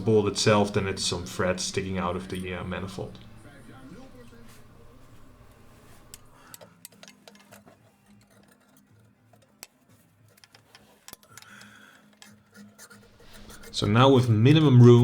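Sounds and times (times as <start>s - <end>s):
low steady hum: 0.0s - 6.5s
faint clicks and ticks: 5.4s - 13.9s.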